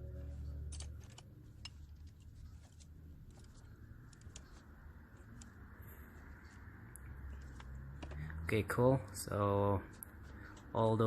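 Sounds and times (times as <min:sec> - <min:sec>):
low hum: 0:00.0 - 0:10.8
hand tools clicking and tapping: 0:00.6 - 0:08.4, 0:09.9 - 0:10.8.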